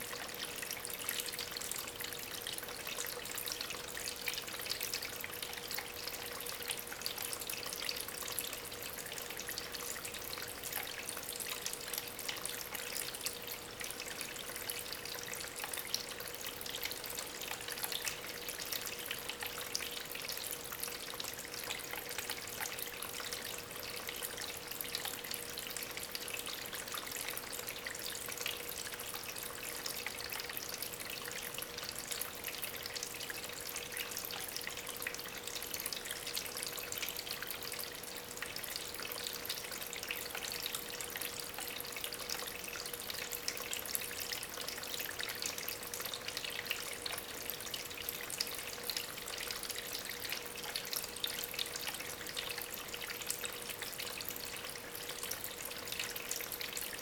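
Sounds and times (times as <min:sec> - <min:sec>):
faint pump hum: 0:00.0 - 0:57.0.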